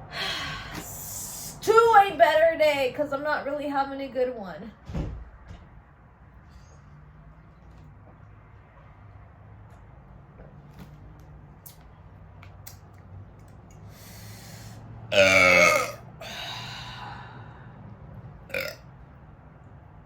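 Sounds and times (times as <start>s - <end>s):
breathy exhale: 0.1s - 0.8s, 13.9s - 14.9s, 16.2s - 18.0s
woman burping loudly: 15.1s - 16.4s, 18.5s - 18.8s.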